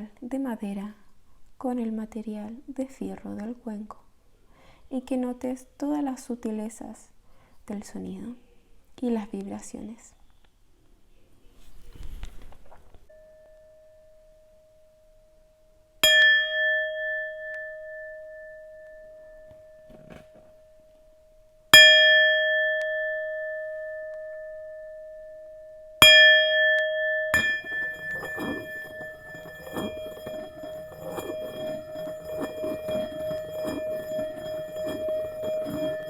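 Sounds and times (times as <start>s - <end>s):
singing bowl struck with mallet: 16.0s - 19.9s, 20.5s - 36.0s
wavering scraping sound: 27.4s - 36.0s.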